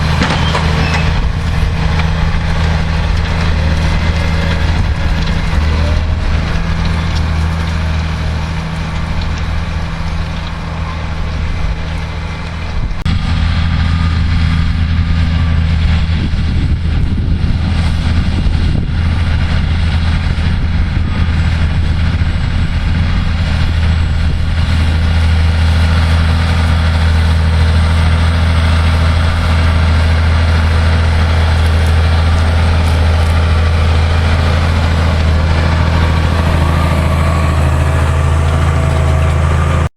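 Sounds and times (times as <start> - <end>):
tractor diesel engine running: 0.0 - 39.9.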